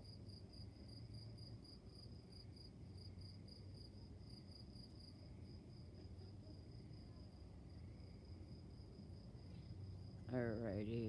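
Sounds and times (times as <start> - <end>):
crickets chirping: 0.0 - 11.0.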